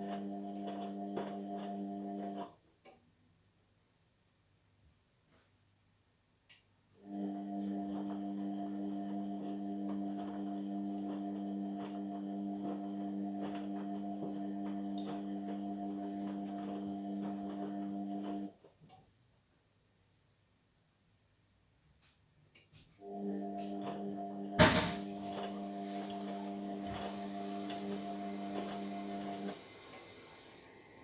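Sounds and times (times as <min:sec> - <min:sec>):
washing machine pump humming: 0:00.0 - 0:02.4, 0:07.1 - 0:18.5, 0:23.0 - 0:31.0.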